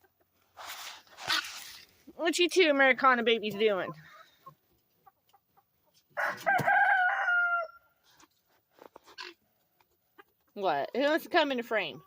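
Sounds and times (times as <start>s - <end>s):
rooster crowing: 6.2s - 7.9s.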